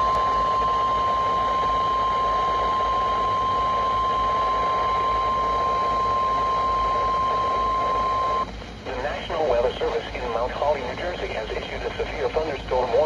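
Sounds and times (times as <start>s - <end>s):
loud high warning tone: 0.0s - 9.8s
radio static hiss: 0.0s - 13.0s.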